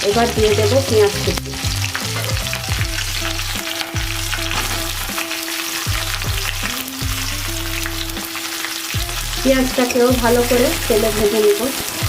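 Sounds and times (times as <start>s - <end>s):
onion sizzling in hot oil: 0.0s - 12.0s.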